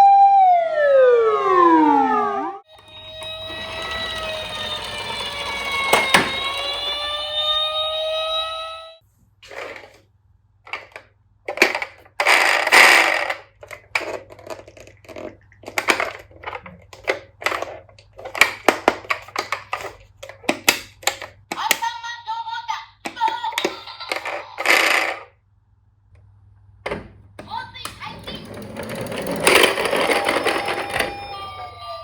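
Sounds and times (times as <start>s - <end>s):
toy siren rising tone: 0.0s - 9.0s, 28.3s - 32.0s
wavering electronic tone: 1.4s - 9.0s
toy trucks clattering on wood: 9.5s - 10.0s, 10.7s - 21.9s, 23.1s - 25.3s, 27.5s - 31.4s.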